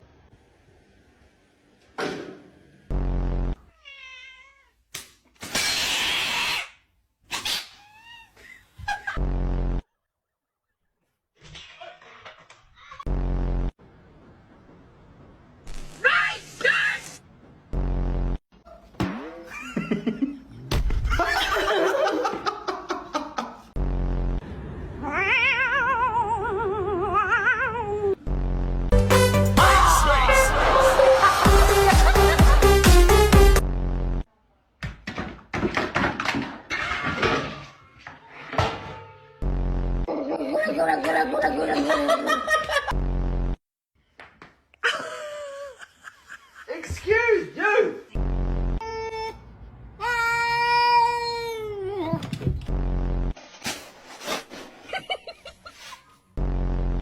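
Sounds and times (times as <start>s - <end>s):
loud buzzing tone: 2.9s - 3.6s, 13.1s - 13.8s, 23.8s - 24.4s, 39.4s - 40.1s, 48.2s - 48.9s
cat meowing: 3.7s - 4.8s, 7.6s - 8.4s, 25.0s - 28.1s
short low hum: 48.2s - 49.1s.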